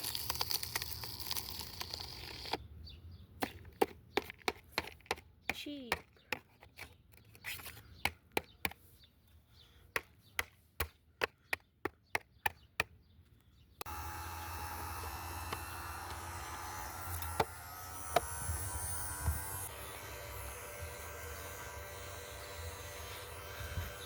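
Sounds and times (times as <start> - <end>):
robot vacuum motor humming: 13.8 - 24.0.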